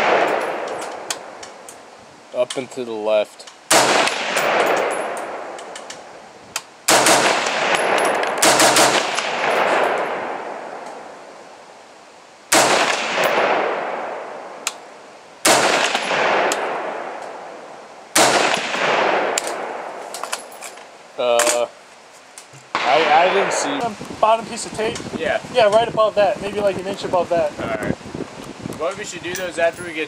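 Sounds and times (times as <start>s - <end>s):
rifle shots echoing: 0.0s - 1.6s, 3.7s - 6.1s, 6.9s - 11.3s, 12.5s - 20.6s, 22.7s - 23.8s.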